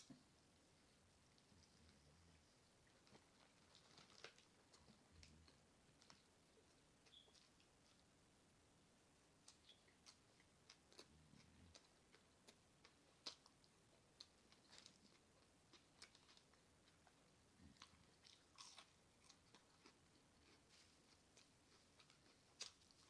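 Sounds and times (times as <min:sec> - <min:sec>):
person chewing food: 0:09.4 - 0:23.0.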